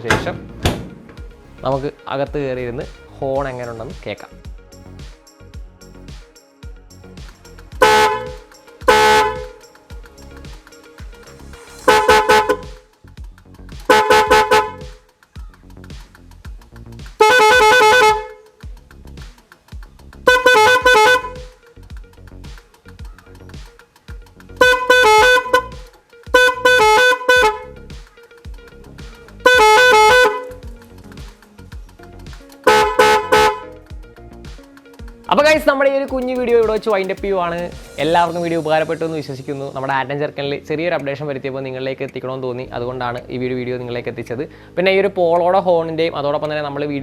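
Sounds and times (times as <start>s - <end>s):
background music with beat: 0.0s - 41.4s
car horn playing stepped tune: 7.8s - 9.6s, 13.9s - 14.8s, 17.2s - 18.4s, 20.3s - 21.4s, 24.6s - 25.7s, 26.4s - 27.7s, 32.7s - 33.7s
two-tone car horn: 13.9s - 14.8s, 17.3s - 18.3s, 20.3s - 21.4s.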